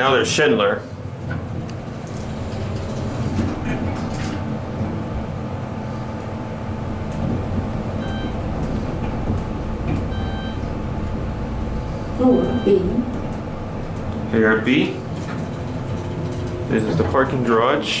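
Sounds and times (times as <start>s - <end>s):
elevator rumble and hum: 0.0s - 18.0s
short electronic beeps: 12.3s - 12.8s.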